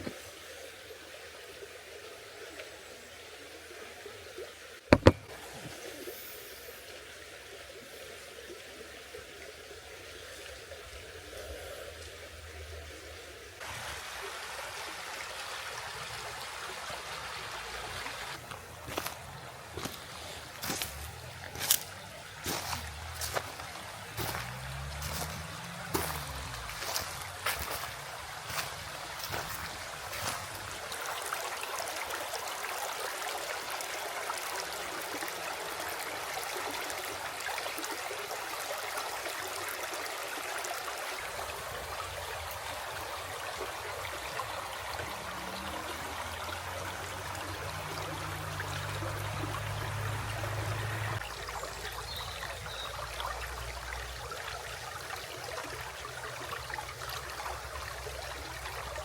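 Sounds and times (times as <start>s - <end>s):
river flowing: 0.0s - 59.0s.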